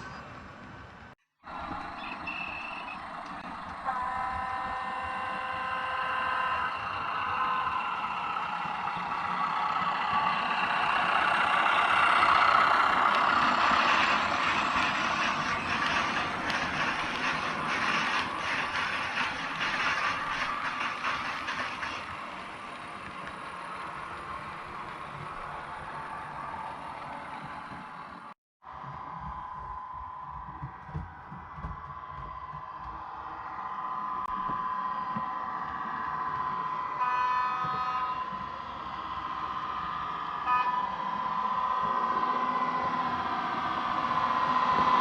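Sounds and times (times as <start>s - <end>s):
model train wheels clicking: 2.4s - 28.2s
model train horn: 3.9s - 6.5s, 37.0s - 38.5s, 40.4s - 41.0s.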